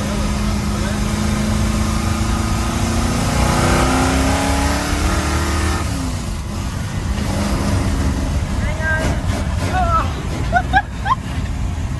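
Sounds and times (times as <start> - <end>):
car engine revving: 0.0 - 11.9.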